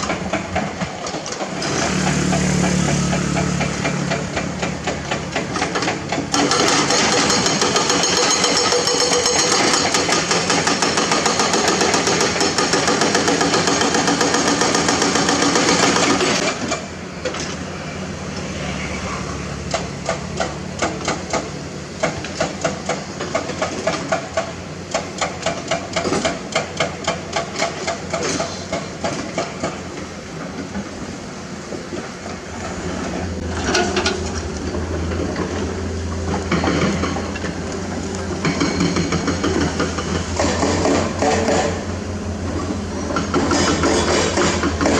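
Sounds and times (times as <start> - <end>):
hydraulic breaker hammering rock: 0.0 - 16.9, 19.7 - 29.8, 38.3 - 41.9, 42.6 - 44.9
diesel engine running: 1.3 - 8.0, 32.4 - 44.9.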